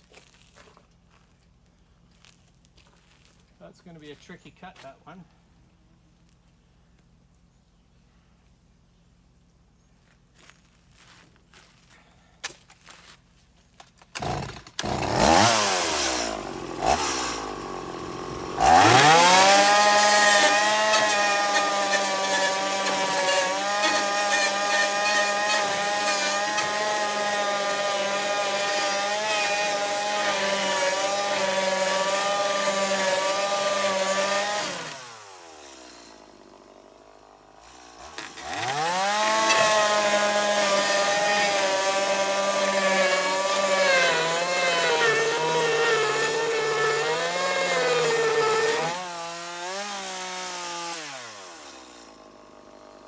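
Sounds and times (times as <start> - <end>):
chainsaw cutting fiberglass: 14.0 - 53.0.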